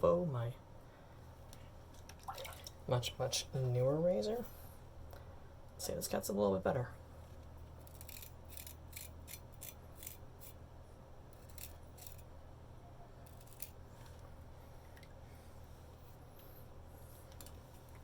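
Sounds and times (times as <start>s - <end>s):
low steady hum: 0.0s - 18.0s
razor scraping stubble: 7.8s - 10.6s, 11.4s - 12.3s, 13.2s - 14.2s.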